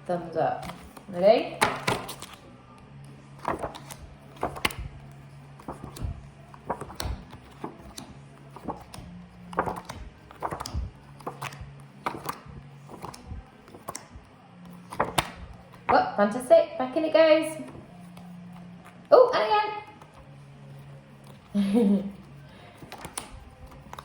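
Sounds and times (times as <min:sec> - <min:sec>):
cards tapping and flicking: 0:00.6 - 0:02.4, 0:03.4 - 0:16.0, 0:22.2 - 0:24.0.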